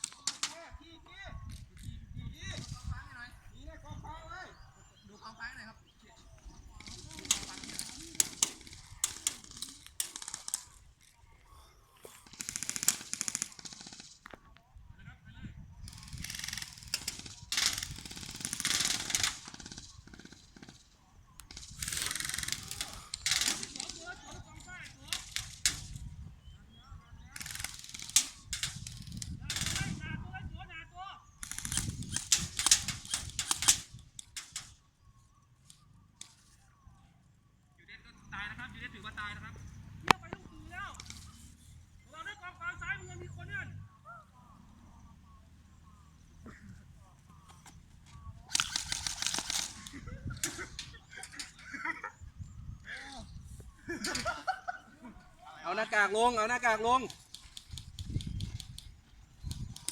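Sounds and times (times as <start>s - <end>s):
airsoft guns firing bursts: 0.0s - 0.7s, 6.5s - 11.2s, 12.2s - 14.5s, 15.8s - 26.1s, 27.3s - 30.0s, 31.4s - 34.8s, 48.1s - 52.1s, 55.8s - 59.9s.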